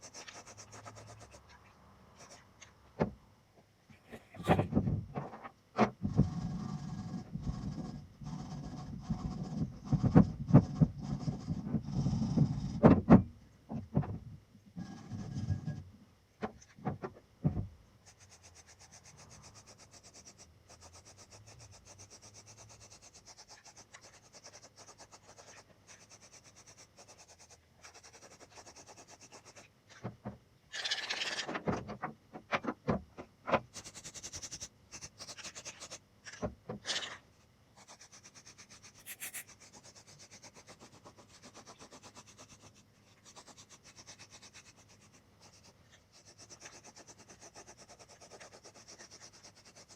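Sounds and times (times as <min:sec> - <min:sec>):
rasping strokes: 0:00.0 - 0:02.7, 0:18.0 - 0:30.0, 0:33.7 - 0:37.2, 0:37.8 - 0:49.9.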